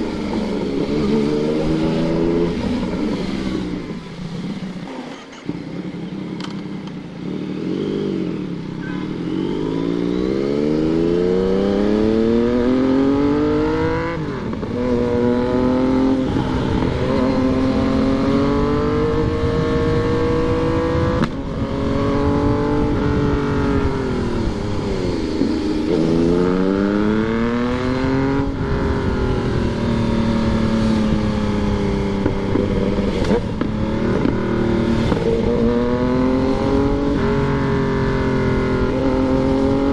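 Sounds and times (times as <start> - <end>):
motorcycle engine accelerating: 0.0 - 39.9
wind noise: 9.8 - 39.9.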